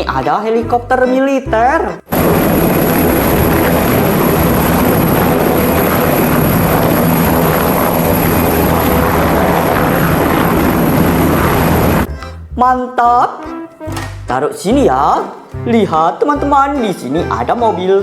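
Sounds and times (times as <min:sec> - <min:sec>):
helicopter rotor and engine: 0:02.1 - 0:12.1
high whine: 0:02.1 - 0:12.2.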